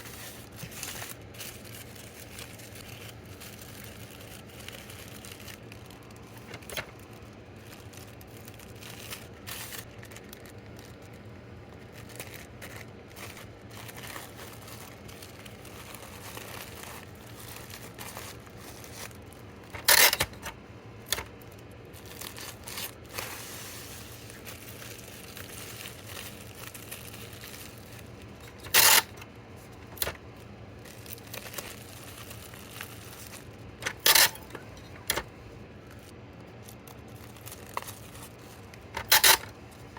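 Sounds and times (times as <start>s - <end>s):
plastic packaging crinkling: 0.0s - 39.9s
plastic tearing: 0.0s - 39.9s.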